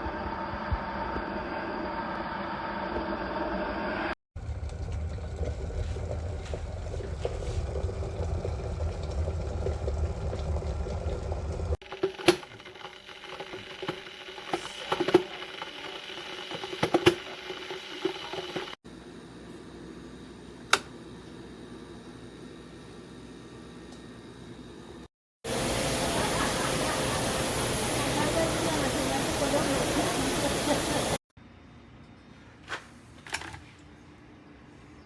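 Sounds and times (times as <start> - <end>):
electric kettle rumbling: 4.4 - 18.8, 25.5 - 31.2.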